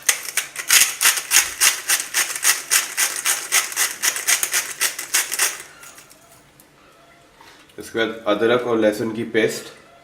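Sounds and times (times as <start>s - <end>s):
salt scratching on raw chicken: 0.9s - 5.7s.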